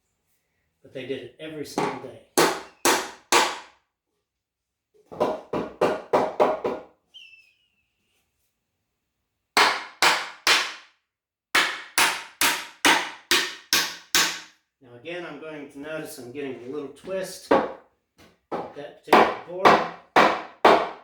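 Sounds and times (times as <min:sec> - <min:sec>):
hammer driving nails into wood: 0:01.8 - 0:03.8, 0:09.6 - 0:10.9, 0:11.5 - 0:14.6, 0:18.5 - 0:21.0.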